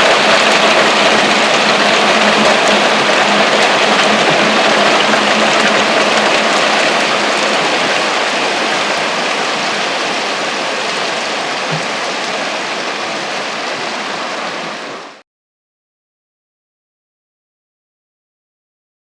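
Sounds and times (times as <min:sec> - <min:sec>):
hailstones striking surfaces: 0:00.0 - 0:10.8.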